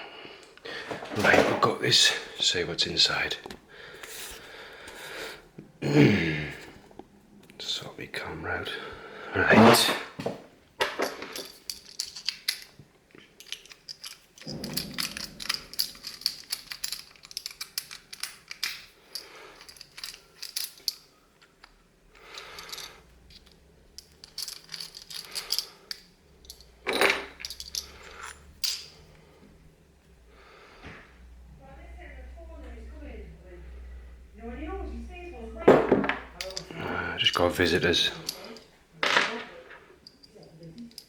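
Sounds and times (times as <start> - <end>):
small metal parts clinking: 10.8 - 29.5, 35.6 - 41.0.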